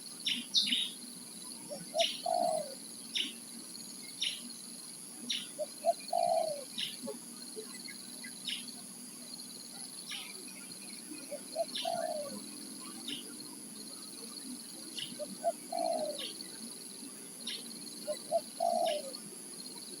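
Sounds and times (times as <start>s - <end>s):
dove cooing: 1.7s - 2.8s, 5.6s - 7.1s, 11.3s - 12.4s, 15.0s - 16.4s, 18.0s - 19.2s.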